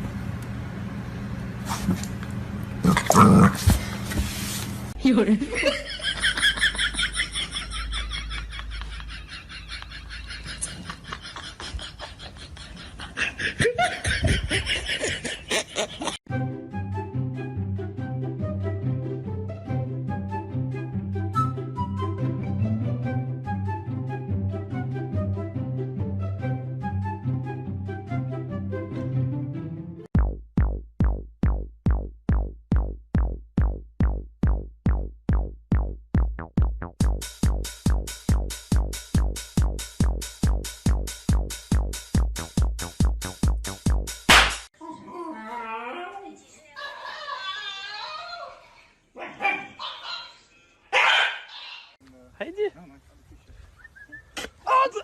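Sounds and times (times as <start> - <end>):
laughter in bursts: 5.3 - 16.2
drum machine kick: 30.1 - 44.7.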